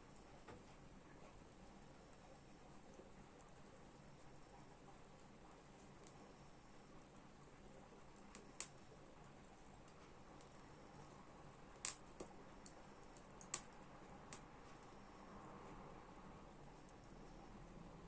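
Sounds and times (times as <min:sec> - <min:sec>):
faint steady hiss: 0:00.0 - 0:18.0
wood fire crackling pops: 0:08.2 - 0:08.8, 0:11.7 - 0:14.5.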